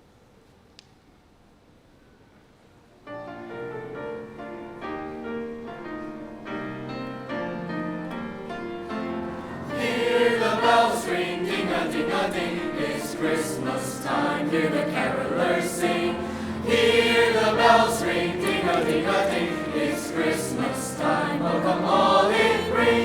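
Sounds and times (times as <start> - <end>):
held musical notes: 8.9 - 23.0
choir singing: 9.2 - 23.0.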